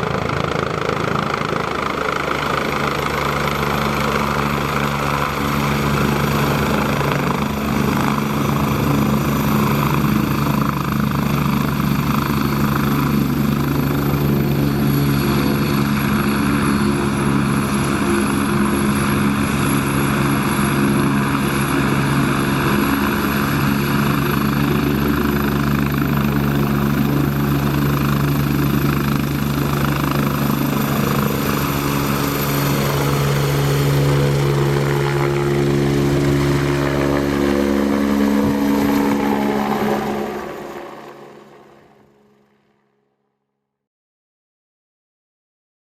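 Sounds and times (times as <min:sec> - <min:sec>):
model helicopter rotor and whine: 0:00.0 - 0:43.0.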